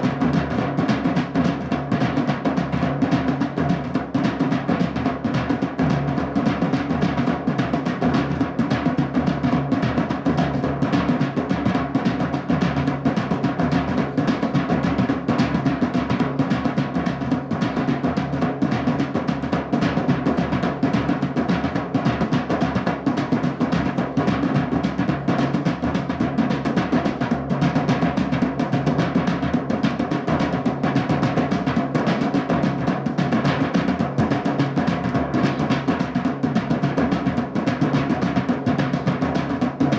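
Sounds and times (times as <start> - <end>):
fast booming drumming: 0.0 - 39.9.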